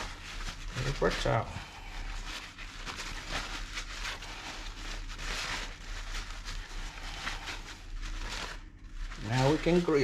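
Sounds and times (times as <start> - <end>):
paper towel rustling and rubbing: 0.0 - 10.0.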